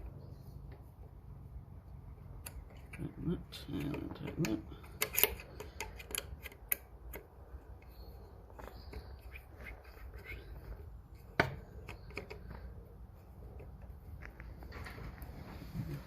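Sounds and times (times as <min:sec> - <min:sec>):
screws being tightened by hand: 0:03.8 - 0:07.3.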